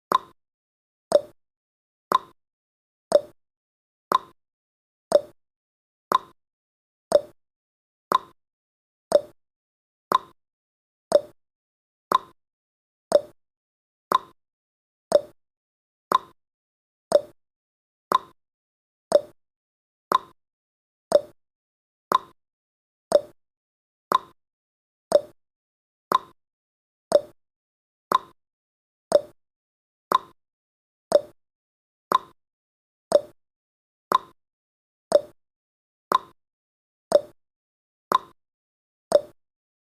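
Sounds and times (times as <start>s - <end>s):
timer ticking tick-tock: 0.1s - 0.4s, 1.1s - 1.4s, 2.1s - 2.4s, 3.1s - 3.4s, 4.1s - 4.4s, 5.1s - 5.4s, 6.1s - 6.4s, 7.1s - 7.4s, 8.1s - 8.4s, 9.1s - 9.4s, 10.1s - 10.4s, 11.1s - 11.4s, 12.1s - 12.4s, 13.1s - 13.4s, 14.1s - 14.4s, 15.1s - 15.4s, 16.1s - 16.4s, 17.1s - 17.4s, 18.1s - 18.4s, 19.1s - 19.4s, 20.1s - 20.4s, 21.1s - 21.4s, 22.1s - 22.4s, 23.1s - 23.4s, 24.1s - 24.4s, 25.1s - 25.4s, 26.1s - 26.4s, 27.1s - 27.4s, 28.1s - 28.4s, 29.1s - 29.4s, 30.1s - 30.4s, 31.1s - 31.4s, 32.1s - 32.4s, 33.1s - 33.4s, 34.1s - 34.4s, 35.1s - 35.4s, 36.1s - 36.4s, 37.1s - 37.4s, 38.1s - 38.4s, 39.1s - 39.4s.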